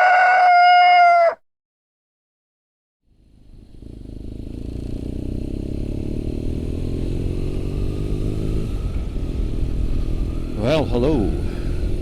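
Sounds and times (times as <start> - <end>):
motorcycle engine running: 3.1 - 12.0.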